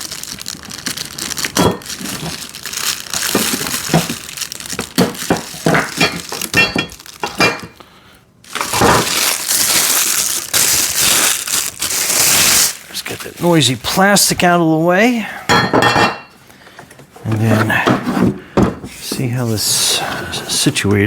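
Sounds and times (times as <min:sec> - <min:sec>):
plastic wrap crinkling: 0:00.0 - 0:07.8, 0:08.4 - 0:15.0.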